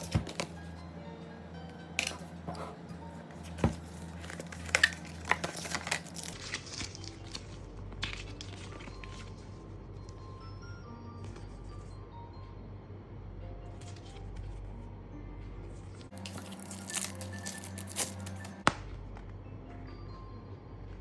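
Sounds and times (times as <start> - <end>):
quiet background music: 0.0 - 21.0
plastic wrap crinkling and tearing: 4.0 - 9.4, 16.0 - 18.6.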